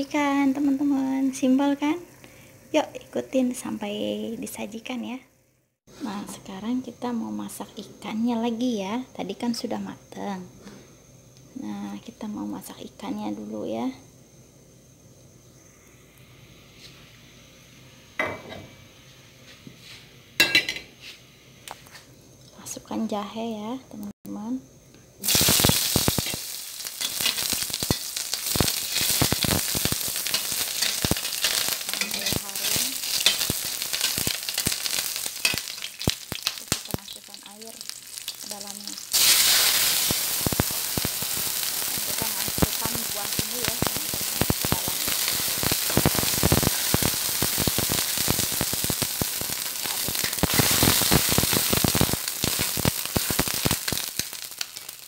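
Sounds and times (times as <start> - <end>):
ginger sizzling in hot oil: 0.0 - 5.2, 24.8 - 55.0.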